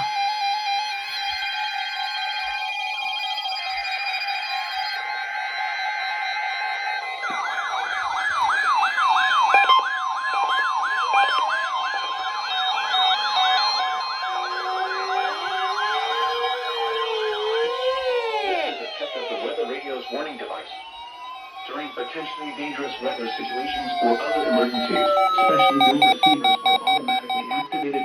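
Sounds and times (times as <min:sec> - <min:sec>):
steady warning tone: 0:00.0 - 0:28.0
wailing siren alarm: 0:00.0 - 0:28.0
beeping alert tones: 0:23.3 - 0:28.0.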